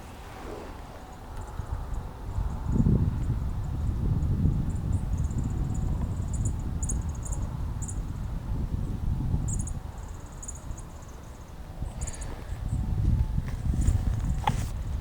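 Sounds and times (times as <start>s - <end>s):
wind on microphone: 0.0s - 15.0s
insects chirping: 4.7s - 8.3s, 9.5s - 12.4s.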